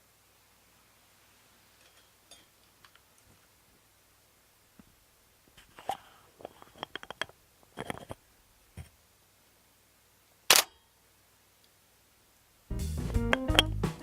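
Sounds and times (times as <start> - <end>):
camera shutter release: 10.5 - 10.8
light camera clicks: 10.5 - 10.8.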